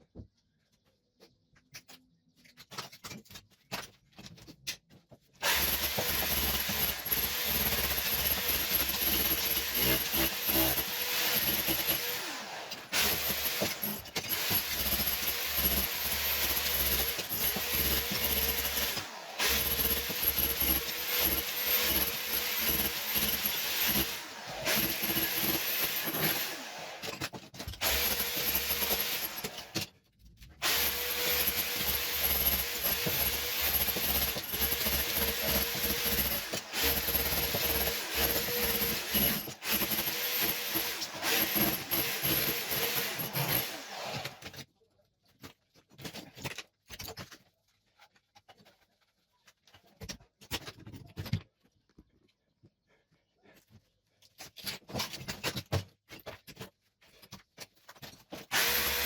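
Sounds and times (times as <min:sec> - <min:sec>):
electric power tool whining: 0:58.5 - 0:59.0.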